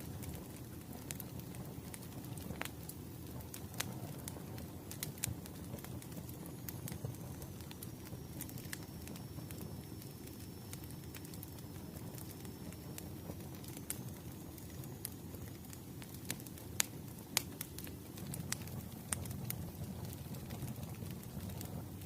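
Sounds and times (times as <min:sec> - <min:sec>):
burning logs crackling and popping: 0:00.0 - 0:22.0
low rumble of flames: 0:00.0 - 0:22.0
faint high whine: 0:04.0 - 0:17.6.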